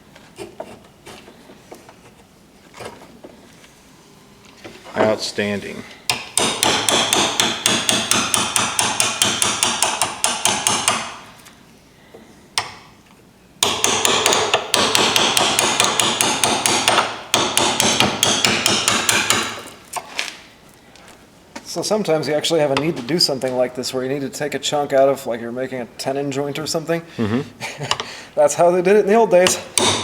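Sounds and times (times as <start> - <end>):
hammer striking chisel into wood: 6.1 - 11.3, 12.6 - 12.9, 13.6 - 19.7, 29.4 - 30.0.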